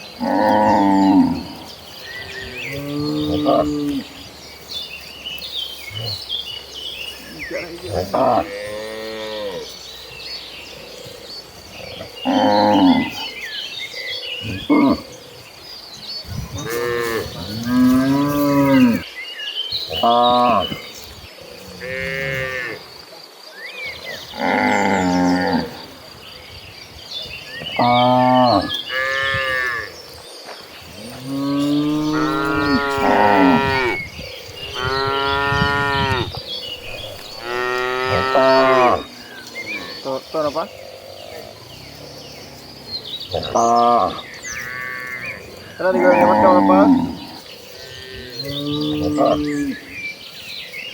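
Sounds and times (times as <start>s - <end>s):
cattle mooing: 7.5s - 9.7s, 16.6s - 19.0s, 31.2s - 34.0s, 34.7s - 40.2s, 45.8s - 47.4s.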